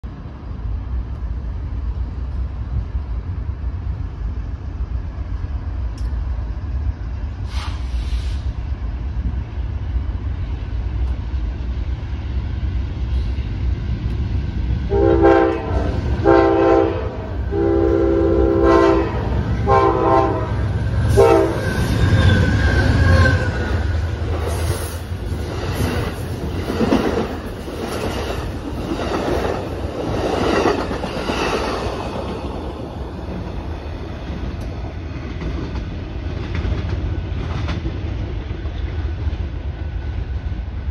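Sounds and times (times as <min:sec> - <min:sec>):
train low rumble: 0:00.0 - 0:40.9
locomotive horn blasts: 0:14.9 - 0:22.4
high squeal: 0:21.0 - 0:25.0.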